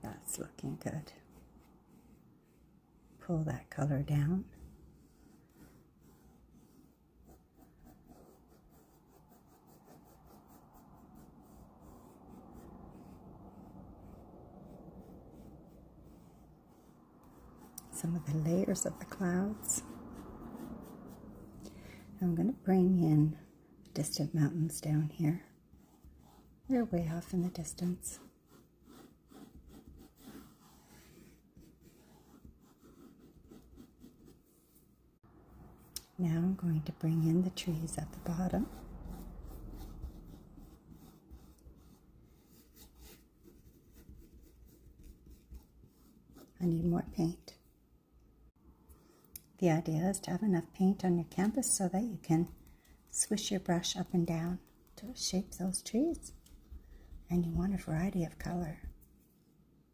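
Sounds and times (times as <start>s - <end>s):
paintbrush brushing on canvas: 4.1s - 35.0s, 35.8s - 47.7s.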